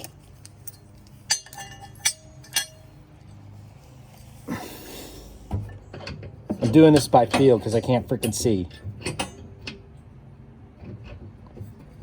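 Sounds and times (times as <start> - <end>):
mower blade clinking against metal: 0.0 - 2.9.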